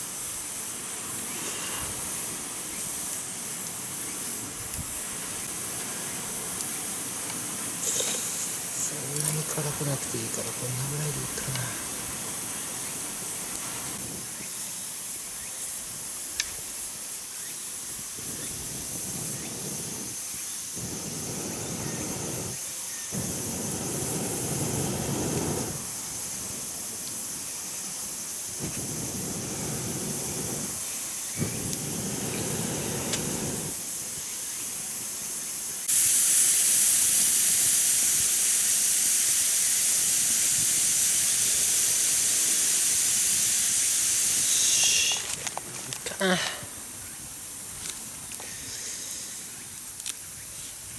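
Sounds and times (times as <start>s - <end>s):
oil sizzling in a frying pan: 35.7s - 45.2s.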